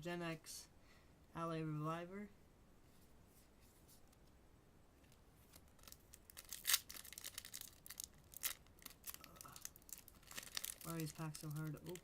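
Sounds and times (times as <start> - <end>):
foil wrapper crinkling and tearing: 5.5 - 12.0.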